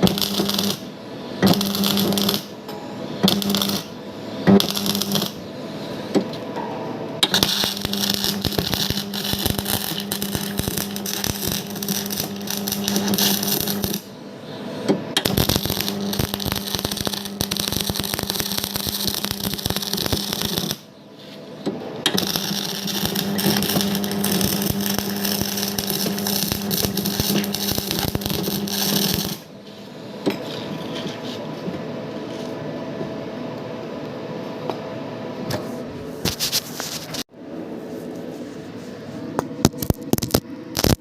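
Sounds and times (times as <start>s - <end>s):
arc welding crackle and buzz: 0.0s - 2.6s, 3.2s - 5.5s, 7.2s - 14.2s, 15.1s - 21.4s, 22.0s - 31.4s, 39.6s - 41.0s.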